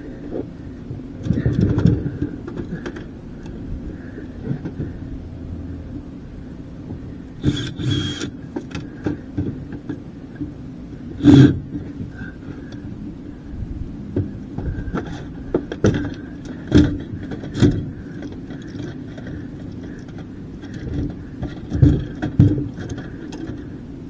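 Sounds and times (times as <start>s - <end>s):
low hum: 0.0s - 24.0s
metal clanks and rattles: 1.2s - 5.0s, 6.9s - 12.8s, 14.2s - 23.8s.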